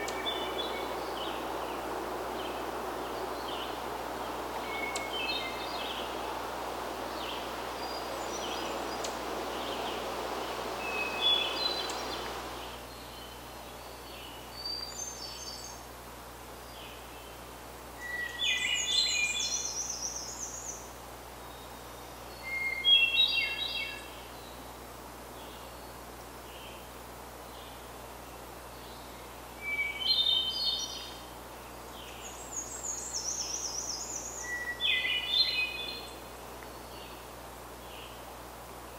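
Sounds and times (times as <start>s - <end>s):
steady rushing noise: 0.0s - 12.8s
songbirds singing: 0.0s - 15.8s, 31.8s - 38.3s.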